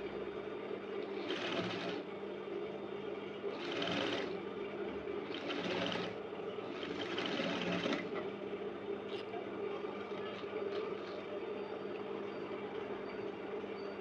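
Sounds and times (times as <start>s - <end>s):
sewing machine stitching: 1.0s - 2.1s, 3.5s - 8.3s.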